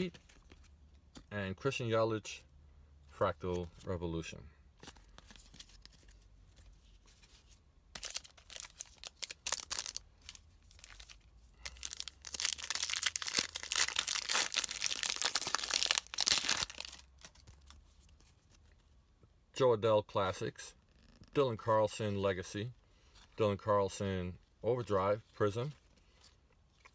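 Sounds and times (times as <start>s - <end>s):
foil wrapper crinkling and tearing: 8.0s - 17.8s.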